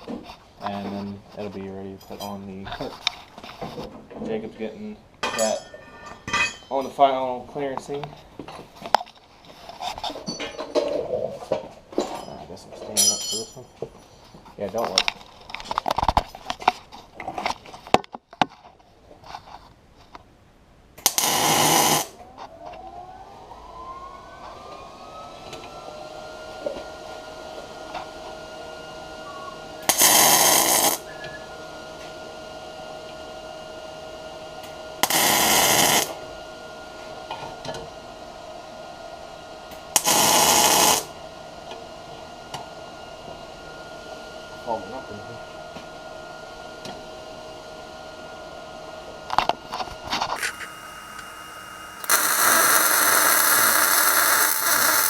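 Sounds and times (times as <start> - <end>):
steady whine: 50.2 - 55.0
short welding bursts: 50.4 - 55.0.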